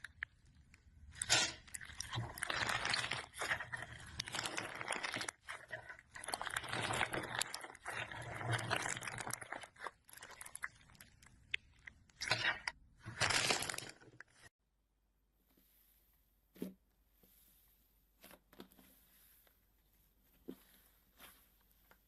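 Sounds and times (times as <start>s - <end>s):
slime crackling and popping: 0.0s - 14.5s.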